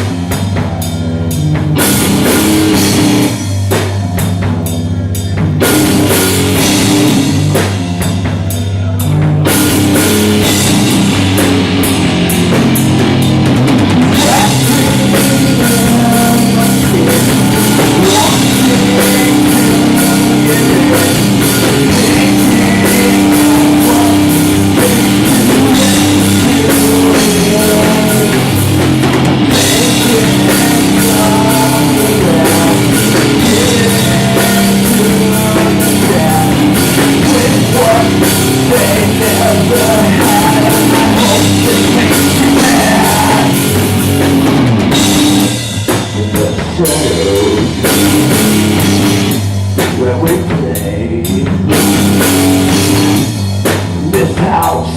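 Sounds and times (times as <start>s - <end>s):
electric guitar: 0.0s - 54.9s
rock band playing: 0.0s - 54.9s.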